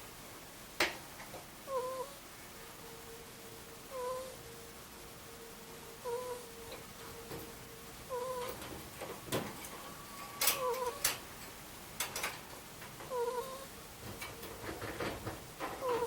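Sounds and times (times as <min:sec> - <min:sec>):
ferret snoring squeaky peeps: 0:01.7 - 0:02.2, 0:03.9 - 0:04.4, 0:06.0 - 0:06.8, 0:08.0 - 0:08.6, 0:10.0 - 0:11.1, 0:13.1 - 0:13.8, 0:15.8 - 0:16.0.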